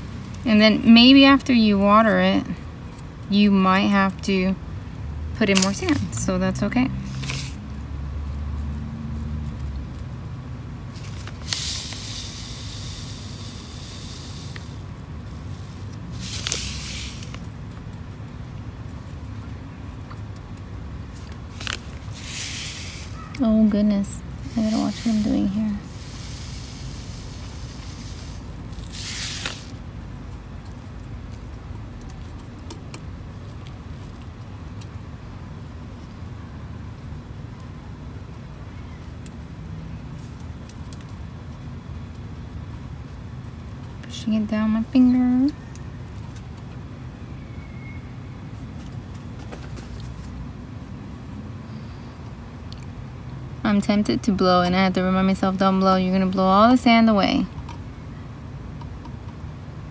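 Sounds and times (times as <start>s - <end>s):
steady low rumble: 0.0s - 38.6s
sand pouring trickle: 11.2s - 14.8s, 15.6s - 17.4s, 22.1s - 23.2s, 24.5s - 29.8s.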